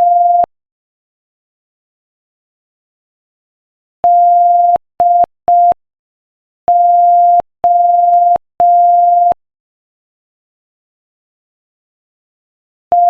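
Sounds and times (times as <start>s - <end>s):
morse code beeps: 0.0s - 0.5s, 4.1s - 5.8s, 6.7s - 9.4s.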